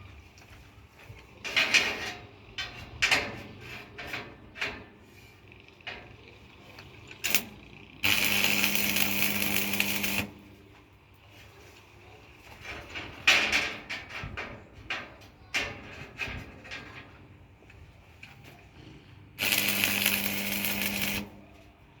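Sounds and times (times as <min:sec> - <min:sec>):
small electric power tool running: 0:08.0 - 0:10.4, 0:19.4 - 0:21.3.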